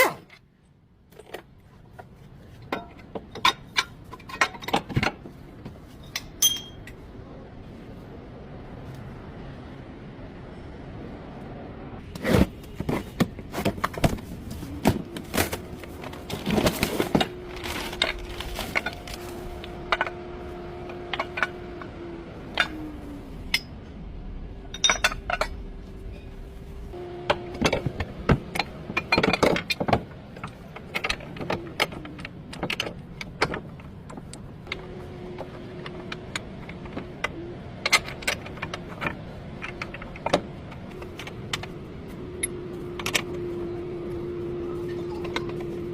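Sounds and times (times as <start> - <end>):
metallic clinks of hand tools: 6.2 - 6.8
steady hum sliding in pitch: 17.1 - 29.0, 39.3 - 45.9.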